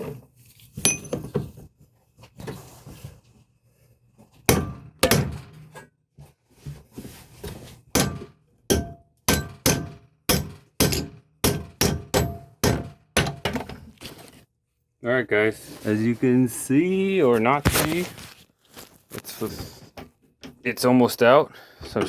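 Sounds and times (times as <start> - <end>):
hammer striking metal: 4.5 - 5.5, 8.0 - 13.6
quiet handling noises: 17.2 - 20.6.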